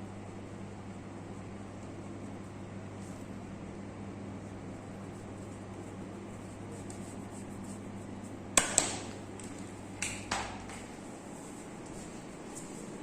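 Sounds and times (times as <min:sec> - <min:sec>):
steady low hum: 0:00.0 - 0:13.0
sharp cracks during massage: 0:08.6 - 0:09.2.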